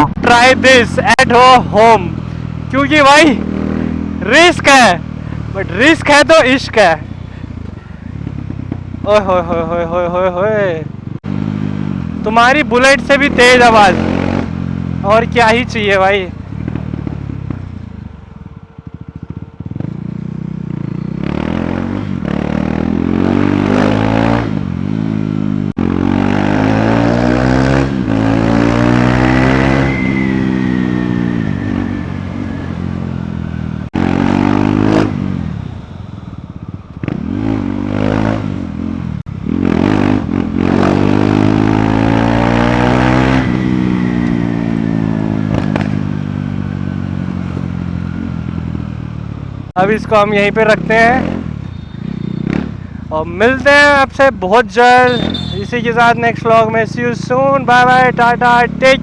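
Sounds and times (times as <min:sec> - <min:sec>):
motorcycle engine revving: 0:00.0 - 0:59.0
exhaust crackles and pops: 0:45.5 - 0:46.1.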